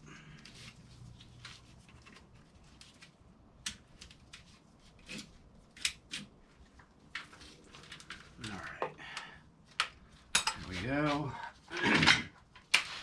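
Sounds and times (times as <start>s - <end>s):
tools and metal parts clicking: 10.3s - 10.7s.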